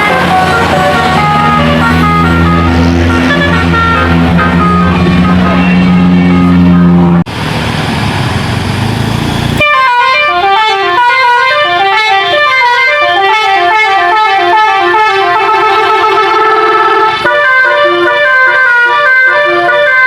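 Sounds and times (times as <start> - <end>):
multi-tone bus horn tune: 0.0 - 7.3, 9.5 - 20.0
loud rushing noise: 0.0 - 9.7.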